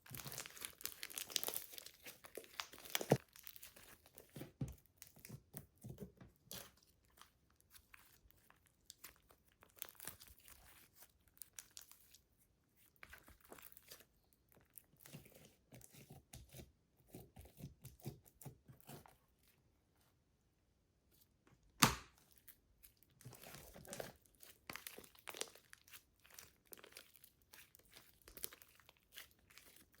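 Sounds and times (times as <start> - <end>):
sharp pop: 21.8 - 22.1.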